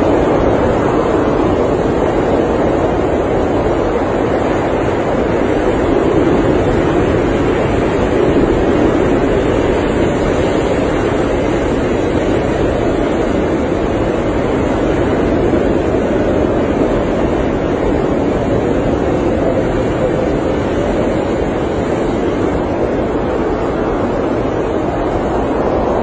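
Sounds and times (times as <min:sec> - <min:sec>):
blizzard wind blowing: 0:00.0 - 0:26.0.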